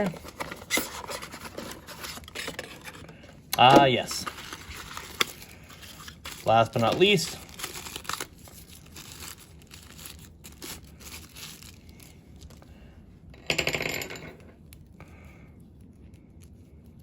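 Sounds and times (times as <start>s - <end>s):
packaging rustling and crinkling: 0.0s - 12.8s.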